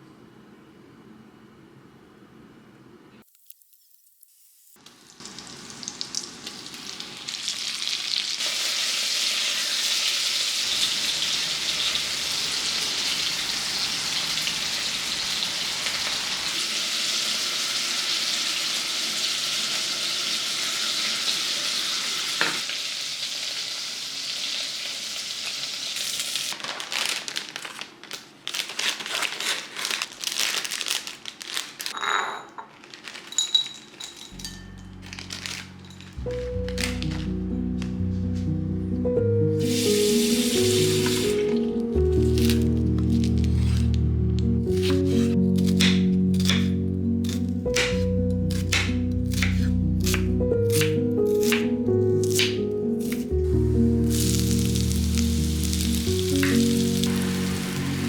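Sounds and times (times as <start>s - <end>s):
food sizzling in a pan: 3.7s - 26.6s, 39.6s - 41.6s, 54.0s - 58.0s.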